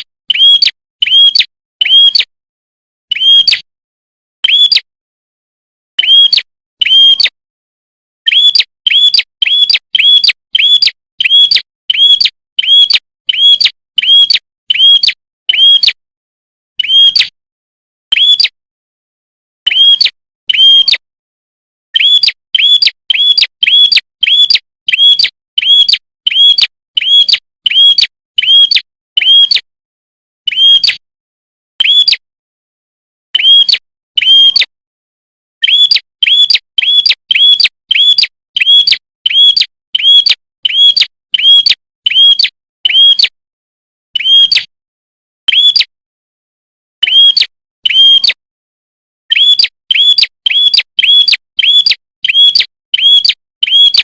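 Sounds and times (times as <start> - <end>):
bird chirping: 0.3 - 2.3, 3.1 - 3.6, 4.4 - 4.9, 6.0 - 7.4, 8.2 - 15.9, 16.8 - 17.3, 18.1 - 18.6, 19.7 - 21.0, 22.0 - 29.6, 30.5 - 31.0, 31.8 - 32.2, 33.3 - 34.7, 35.6 - 43.3, 44.2 - 44.7, 45.5 - 45.9, 47.0 - 48.4, 49.3 - 54.0.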